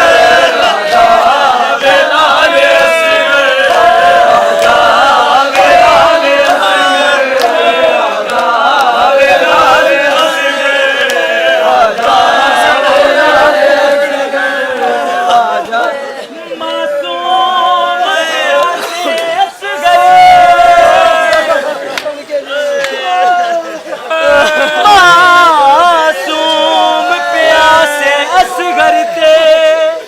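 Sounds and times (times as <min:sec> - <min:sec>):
group of voices chanting: 0:00.0 - 0:30.0.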